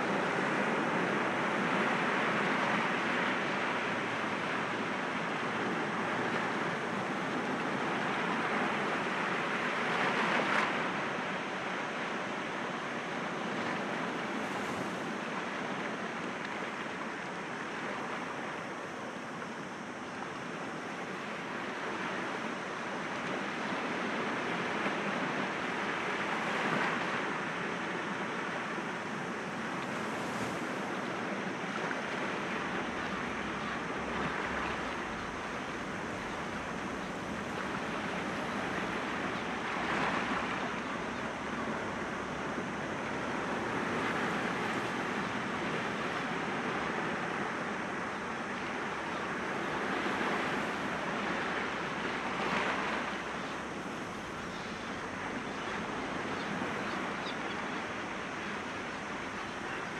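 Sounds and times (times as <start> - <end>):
sea waves breaking against rocks: 29.5 - 47.8.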